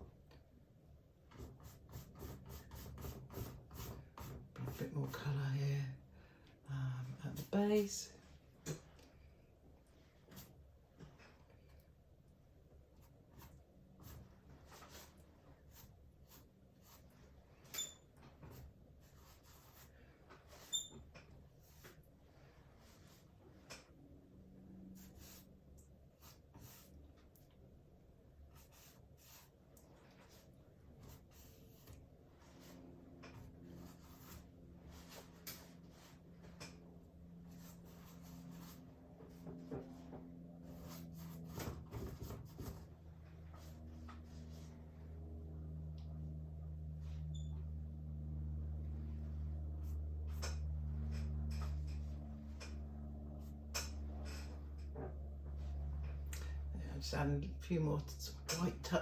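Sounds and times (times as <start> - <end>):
low steady hum: 0.0 - 59.0
paintbrush scratching on canvas: 1.4 - 5.4, 18.5 - 20.9, 26.2 - 27.0, 28.5 - 36.6, 37.4 - 43.0
short high squeaks: 17.6 - 18.1, 20.6 - 21.0
paintbrush dabbing on canvas: 26.2 - 27.0, 28.5 - 32.8.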